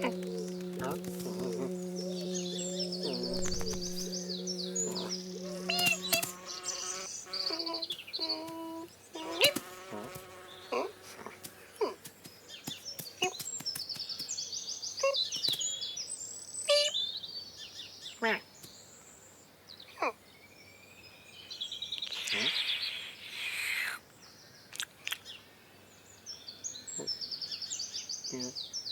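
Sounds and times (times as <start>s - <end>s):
high bird-like twittering trills: 0.0s - 8.5s
cartoon insect buzzing: 0.0s - 11.4s.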